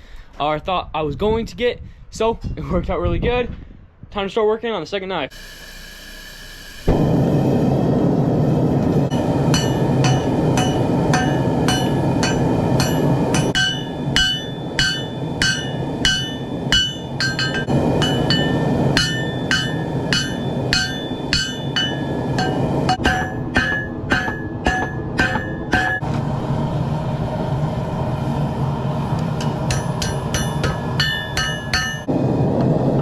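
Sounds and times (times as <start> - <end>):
steady loud rushing noise: 6.7 - 33.0
hammer striking steel on anvil: 9.1 - 26.0, 29.4 - 32.1.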